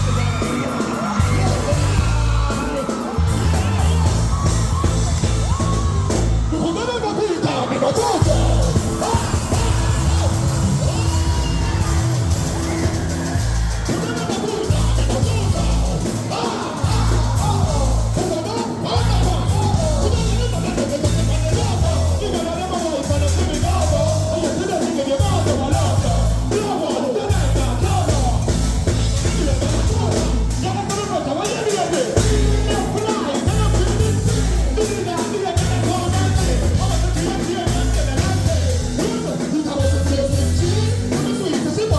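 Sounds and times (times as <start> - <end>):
dancehall music with heavy bass: 0.0 - 41.9
voices singing and shouting: 0.0 - 41.9.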